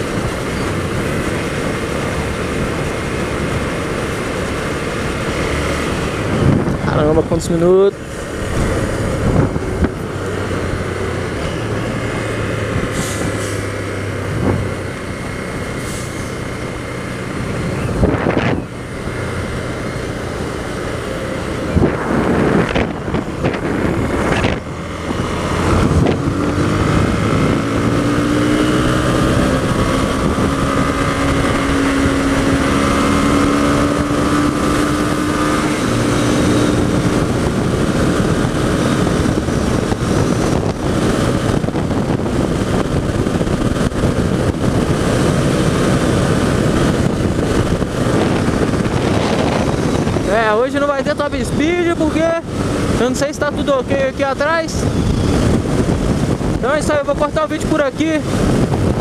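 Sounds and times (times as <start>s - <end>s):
passing traffic: 0.0s - 59.0s
wind noise on microphone: 0.0s - 59.0s
motorcycle engine running: 13.7s - 59.0s.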